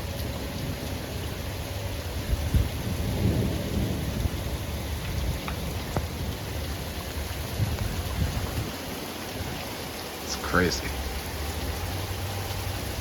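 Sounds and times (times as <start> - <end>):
thunder rumble: 0.0 - 9.9
heavy rain on a deck: 0.0 - 13.0
sharp drip ticks: 4.9 - 13.0.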